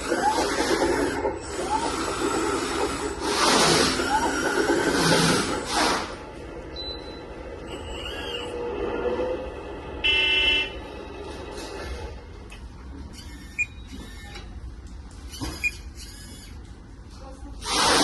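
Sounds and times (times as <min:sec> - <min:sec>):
mechanical hum: 0:00.0 - 0:18.0
electronic horn-like beep: 0:10.0 - 0:10.9.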